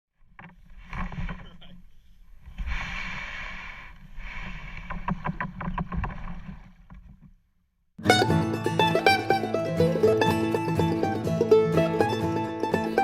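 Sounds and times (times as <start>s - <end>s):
paddle knocks and drips: 4.8s - 7.4s.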